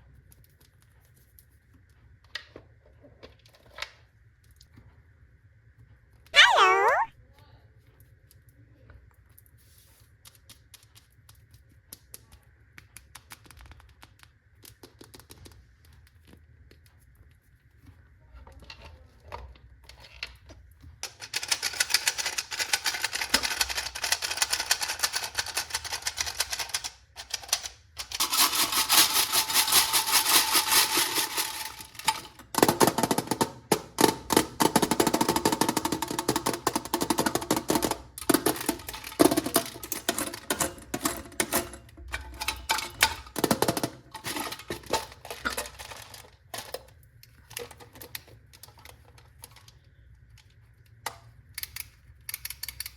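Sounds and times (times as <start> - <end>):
candies clattering into plastic tub: 21.3 - 46.9.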